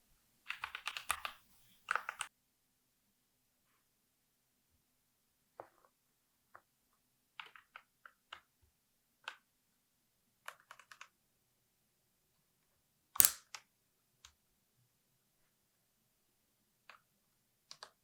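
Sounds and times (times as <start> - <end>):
plastic keycaps clicking: 13.2 - 13.6.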